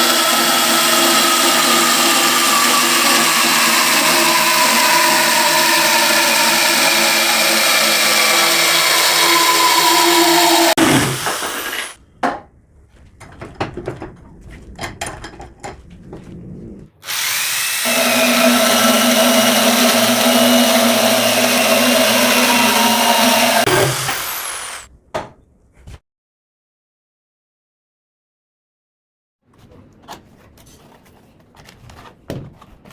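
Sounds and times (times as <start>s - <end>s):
electric drill running: 0.0s - 12.0s, 17.0s - 24.9s.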